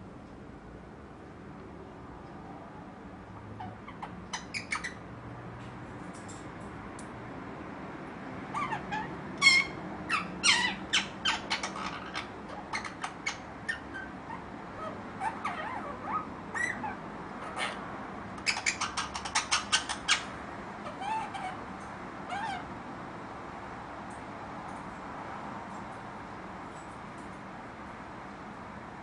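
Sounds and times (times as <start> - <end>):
parakeet chattering: 3.6 - 5.0, 8.5 - 22.7
parakeet squawks: 3.6 - 5.0, 8.5 - 22.7.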